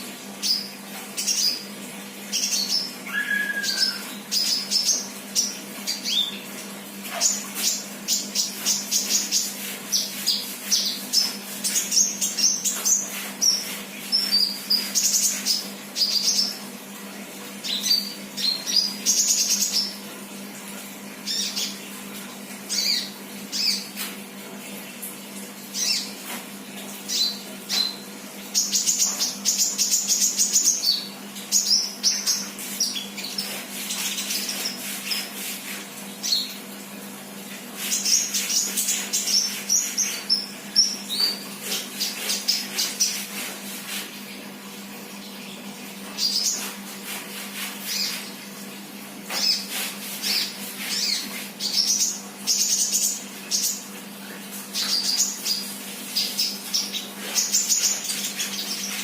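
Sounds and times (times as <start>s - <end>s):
bird chirping and trilling: 2.3s - 6.4s.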